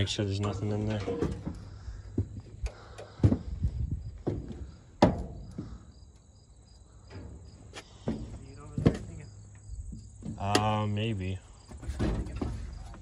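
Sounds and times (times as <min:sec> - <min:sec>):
sharp knocks and clunks: 0:00.0 - 0:06.3, 0:07.0 - 0:13.0
insects chirping faintly: 0:00.0 - 0:13.0.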